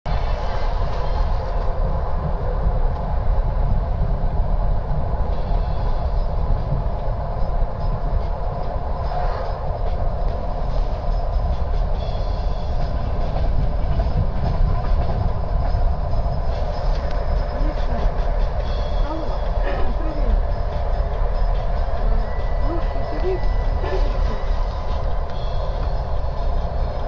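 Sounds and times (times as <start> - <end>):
heavy low rumble: 0.0 - 27.0
train wheels clacking on rail joints: 5.4 - 27.0.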